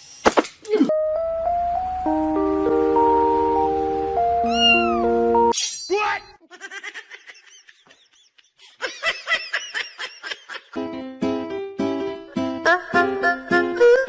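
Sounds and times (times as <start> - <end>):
background music with held notes: 0.9 - 5.5, 10.8 - 14.0
cat meowing: 4.4 - 5.2
short high cat mews: 4.5 - 5.0.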